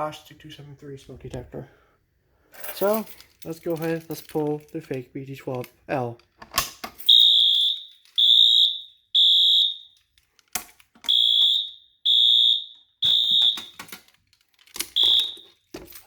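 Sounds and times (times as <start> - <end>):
fire alarm beeps: 7.1 - 10.1, 11.1 - 13.9, 14.9 - 15.6.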